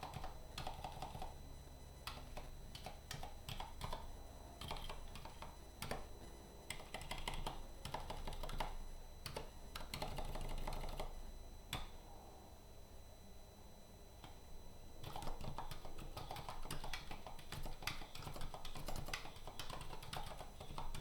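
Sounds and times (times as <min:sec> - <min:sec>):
mechanical keyboard typing: 0:00.0 - 0:01.3, 0:02.1 - 0:04.0, 0:04.6 - 0:06.0, 0:06.7 - 0:11.1, 0:15.0 - 0:21.0.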